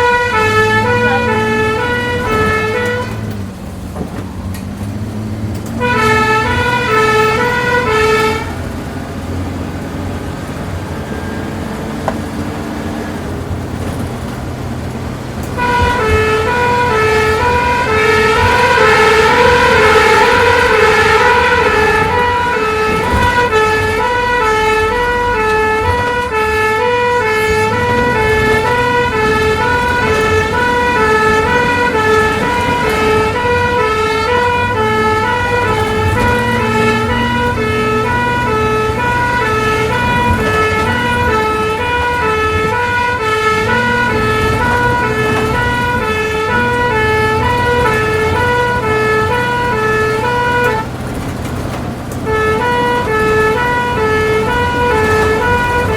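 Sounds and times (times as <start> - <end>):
ambulance two-tone siren: 0.0 - 55.9
engine and road rumble: 0.0 - 55.9.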